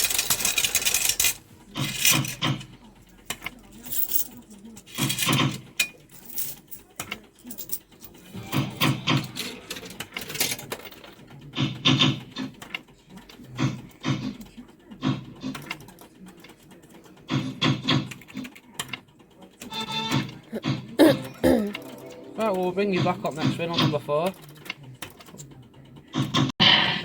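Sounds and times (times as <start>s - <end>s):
fruit machine clicks and reels: 0.0s - 3.7s.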